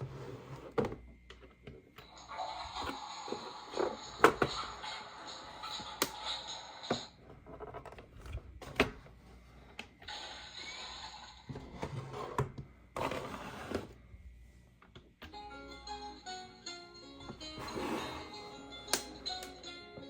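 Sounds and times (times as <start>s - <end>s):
music: 15.2s - 20.0s.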